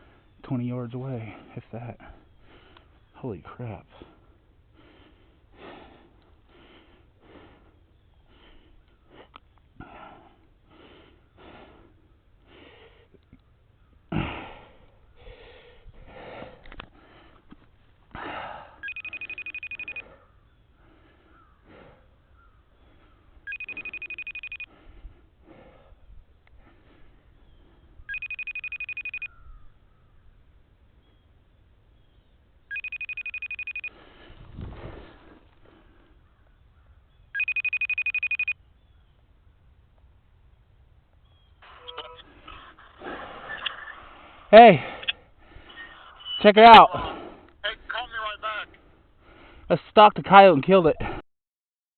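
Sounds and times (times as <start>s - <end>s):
phone ringing tone: 18.8s - 20.2s, 23.5s - 24.7s, 28.1s - 29.4s, 32.7s - 34.0s, 37.4s - 38.6s.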